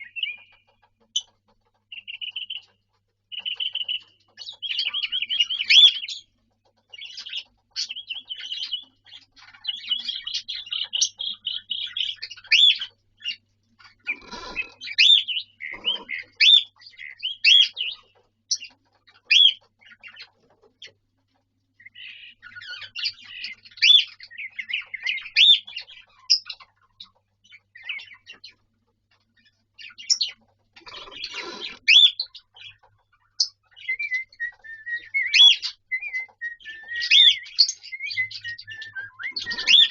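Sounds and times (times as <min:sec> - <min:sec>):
cockatiel whistling and chirping: 0:01.9 - 0:02.7, 0:03.3 - 0:06.3, 0:06.9 - 0:13.4, 0:14.1 - 0:18.0, 0:18.6 - 0:20.3, 0:21.8 - 0:26.6, 0:31.0 - 0:39.9.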